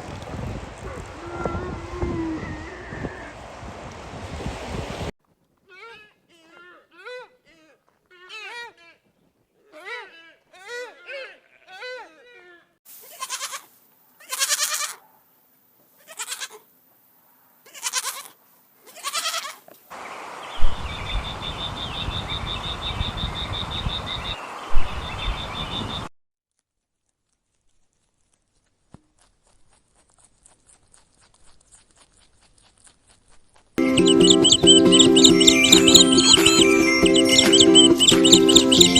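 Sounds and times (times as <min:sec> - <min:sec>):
animal calling: 0:33.8 - 0:38.9.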